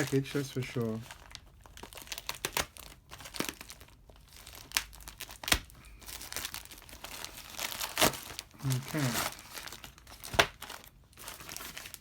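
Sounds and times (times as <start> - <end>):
packaging wrapper crinkling: 0.0 - 12.0.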